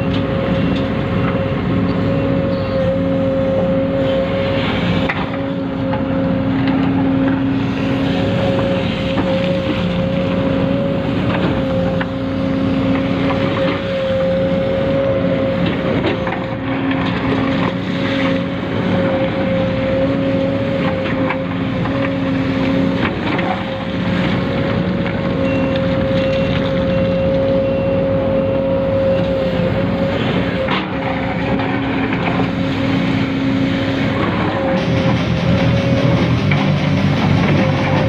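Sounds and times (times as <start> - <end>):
lower motor tones: 31.9 - 38.0.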